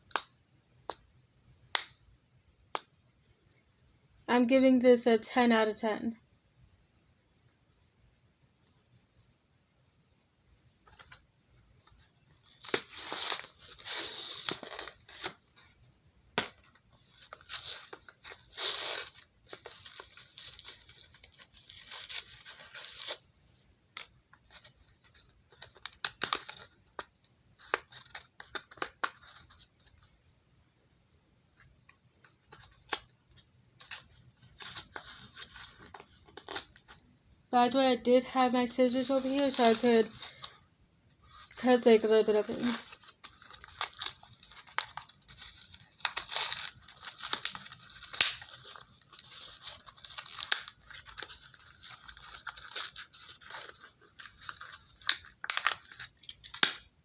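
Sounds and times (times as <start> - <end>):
packaging tearing: 12.4 - 15.4, 17.1 - 23.2, 42.4 - 56.8.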